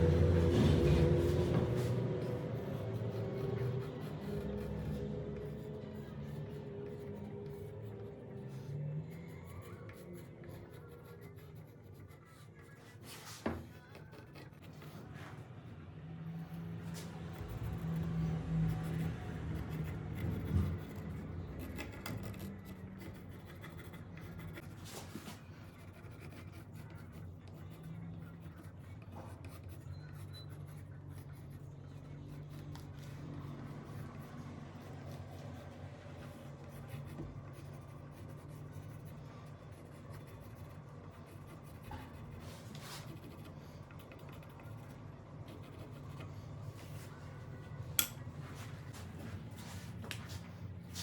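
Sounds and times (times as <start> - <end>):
faint scratching and rubbing: 16.4 - 51.0.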